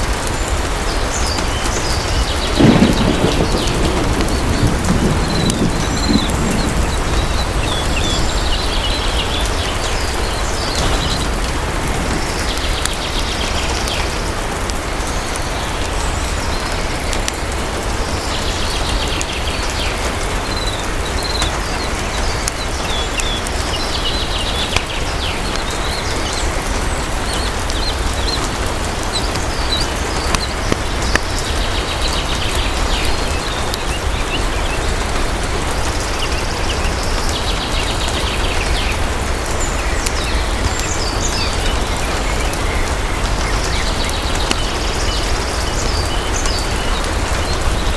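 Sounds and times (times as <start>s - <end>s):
heavy rain: 0.0s - 47.9s
faint fireplace crackles: 2.5s - 7.9s.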